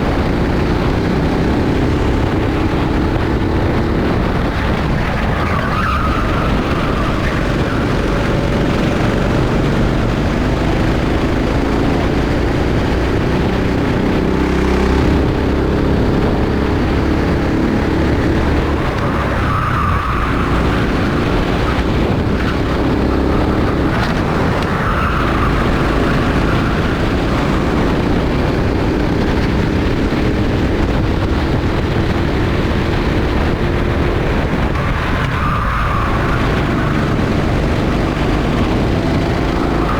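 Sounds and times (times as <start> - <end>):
kart engine revving: 0.0 - 39.9.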